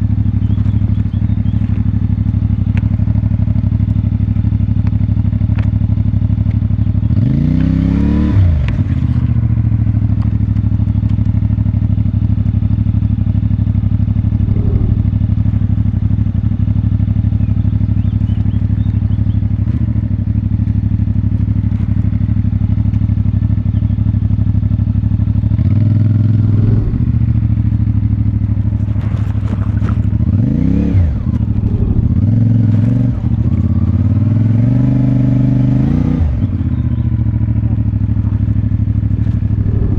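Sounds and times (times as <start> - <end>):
motorcycle engine revving: 13.7 - 16.1, 25.0 - 28.7, 29.7 - 39.9.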